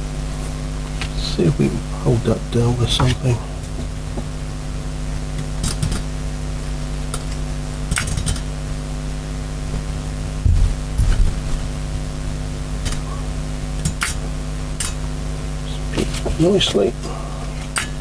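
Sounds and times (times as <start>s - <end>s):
steady hum: 0.0s - 18.0s.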